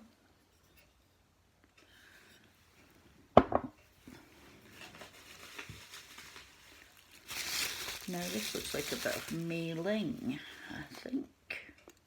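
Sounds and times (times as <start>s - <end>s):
rustling: 4.1s - 11.2s.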